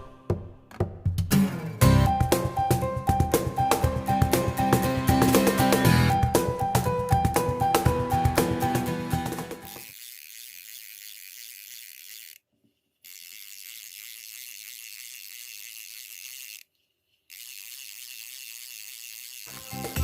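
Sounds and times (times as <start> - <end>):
fishing reel ticking: 9.6 - 20.0.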